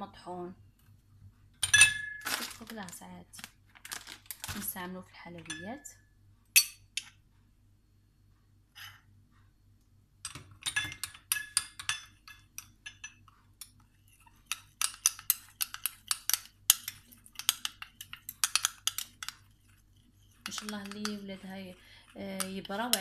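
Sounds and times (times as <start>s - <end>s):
metal spoon clinking on dish: 1.6s - 2.4s, 5.5s - 5.9s, 6.6s - 6.8s, 10.3s - 19.8s, 20.4s - 21.3s, 22.4s - 23.0s.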